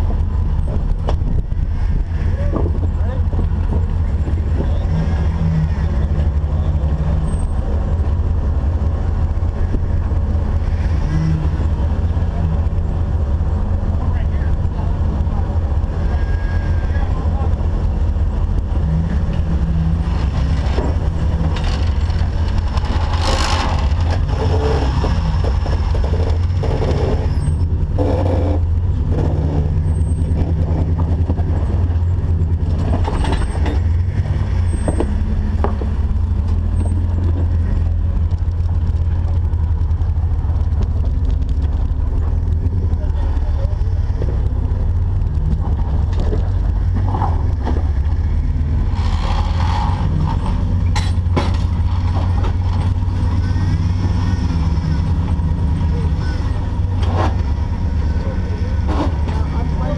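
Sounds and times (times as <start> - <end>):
engine rumbling: 0.0 - 59.9
knocks and scrapes: 18.6 - 59.9.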